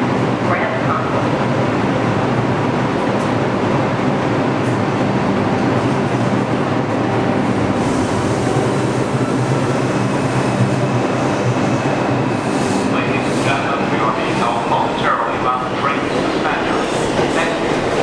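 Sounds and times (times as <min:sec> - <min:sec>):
train rail noise: 0:00.0 - 0:18.0.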